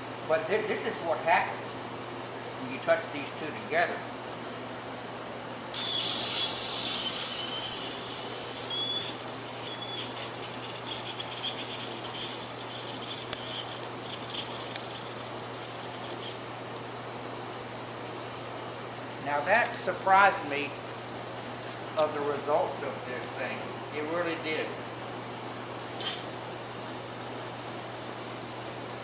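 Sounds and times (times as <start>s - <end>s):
electric arc hissing: 5.7s - 16.5s, 26.0s - 27.3s
arc sputtering crackle: 5.7s - 16.8s
high whistling tones: 5.8s - 10.1s.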